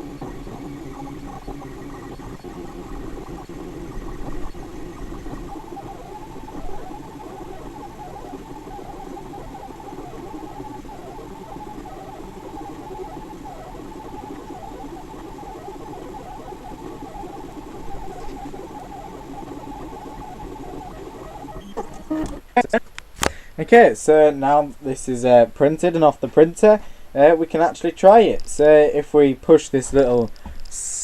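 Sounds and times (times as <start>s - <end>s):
stepper motors whirring: 0.0s - 22.7s
print head bumps: 0.0s - 23.4s.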